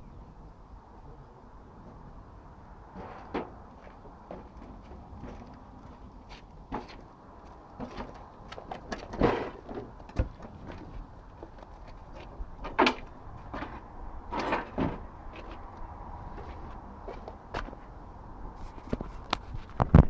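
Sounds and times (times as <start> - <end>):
knocks and handling noises: 3.0 - 17.9.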